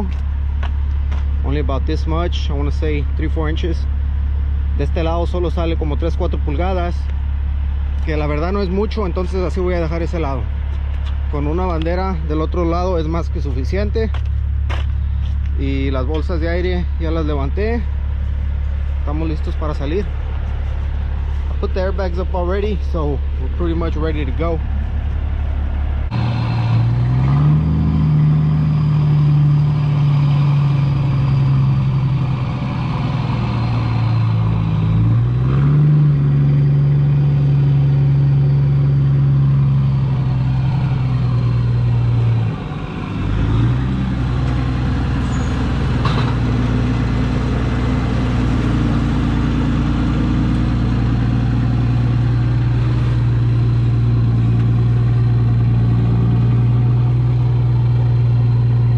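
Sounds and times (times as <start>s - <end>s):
truck diesel engine under load: 0.0s - 58.9s.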